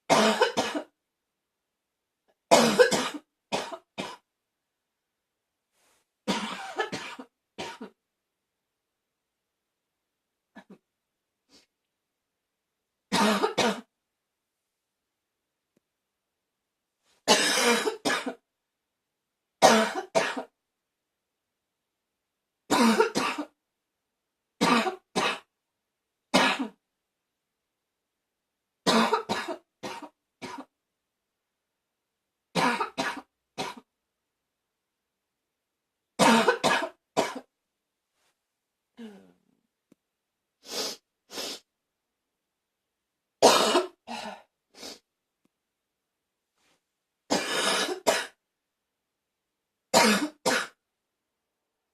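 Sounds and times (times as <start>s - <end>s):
person barking cough: 0.1s - 0.9s, 2.5s - 4.2s, 6.3s - 8.0s, 13.2s - 13.9s, 19.6s - 20.5s, 22.7s - 23.6s, 28.9s - 30.7s, 32.6s - 33.9s, 36.2s - 37.5s, 47.3s - 48.4s.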